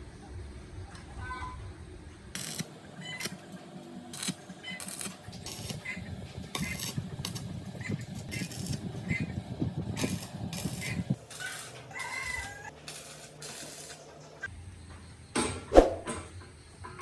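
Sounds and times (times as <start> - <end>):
metal tools clinking and scraping: 10.0 - 14.3.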